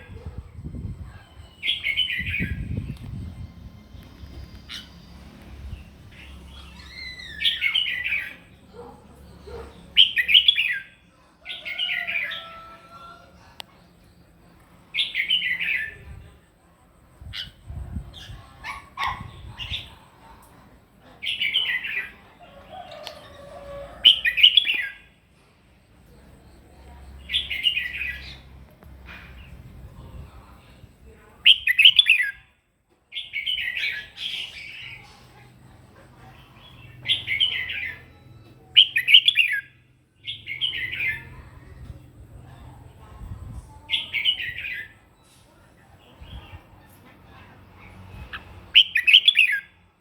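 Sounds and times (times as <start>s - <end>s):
bird singing warbling phrases: 5.8s - 12.5s, 31.0s - 32.4s, 36.6s - 41.5s, 43.4s - 45.0s, 48.3s - 49.8s.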